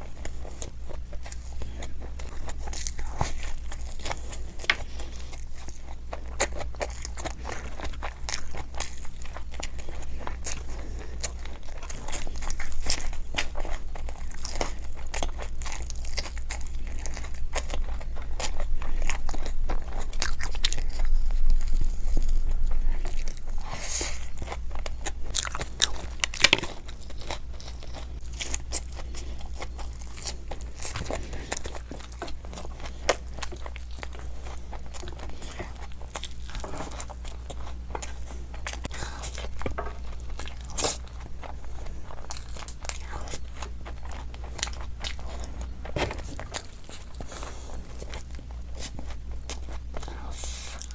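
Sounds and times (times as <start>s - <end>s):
crunchy snack chewing: 0.0s - 50.9s.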